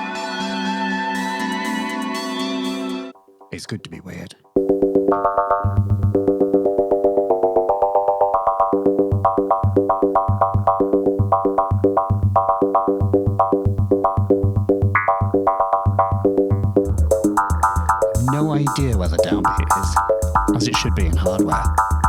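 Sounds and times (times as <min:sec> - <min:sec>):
synthesizer sequenced pattern: 0:00.0 - 0:22.0.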